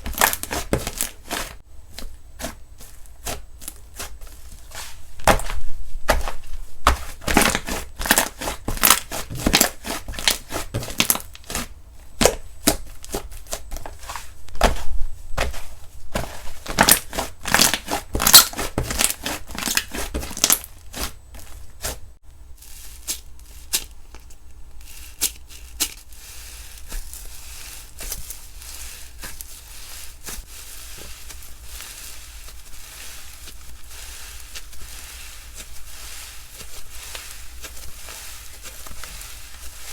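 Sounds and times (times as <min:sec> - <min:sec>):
slime squishing: 0:00.0 - 0:39.9
slime clicking and crackling: 0:07.2 - 0:11.6, 0:16.7 - 0:20.7.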